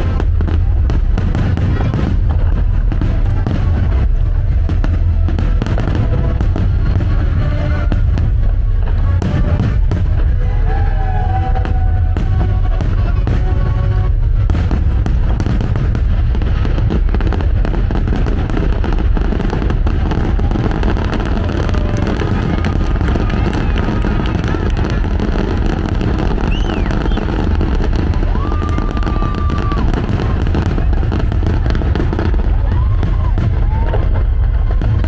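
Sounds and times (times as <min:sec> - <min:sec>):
fireworks booming and crackling: 0:00.0 - 0:35.0
music playing: 0:00.0 - 0:35.0
fireworks whistling: 0:10.9 - 0:35.0.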